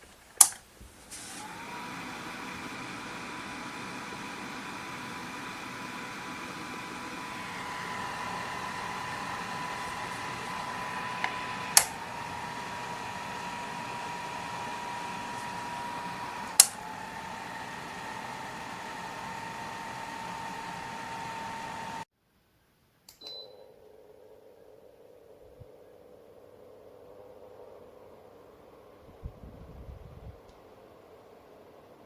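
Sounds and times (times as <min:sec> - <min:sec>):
electric fan running: 0:01.1 - 0:22.1, 0:27.2 - 0:32.0
sharp clicks: 0:16.2 - 0:16.9.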